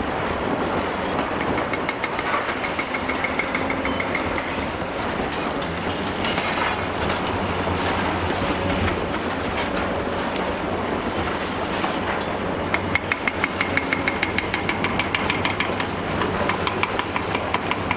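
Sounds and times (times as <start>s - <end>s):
pulsing metallic squeal: 0.0s - 9.4s
excavator diesel engine: 0.0s - 17.9s.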